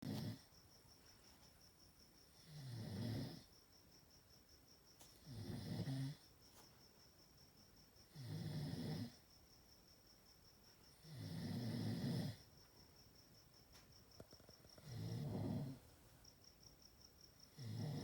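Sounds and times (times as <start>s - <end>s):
dog snoring: 0.0s - 0.5s, 2.4s - 3.5s, 5.2s - 6.2s, 8.1s - 9.2s, 11.0s - 12.4s, 14.3s - 16.1s, 17.5s - 18.0s.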